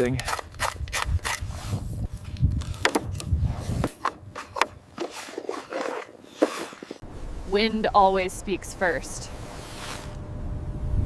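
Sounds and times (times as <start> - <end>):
low rumble: 7.0 - 11.0.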